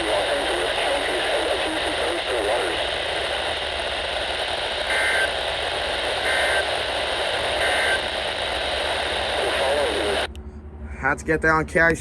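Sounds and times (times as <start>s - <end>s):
radio hiss and static: 0.0s - 10.4s
two-tone digital data bursts: 4.9s - 5.4s, 6.1s - 6.7s, 7.6s - 8.1s.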